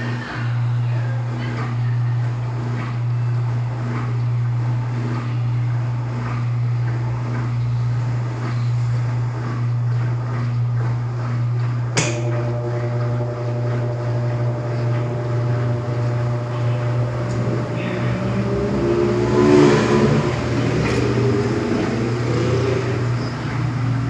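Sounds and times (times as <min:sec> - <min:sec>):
washing machine motor hum: 0:00.0 - 0:24.0
high steady whine: 0:12.0 - 0:24.0.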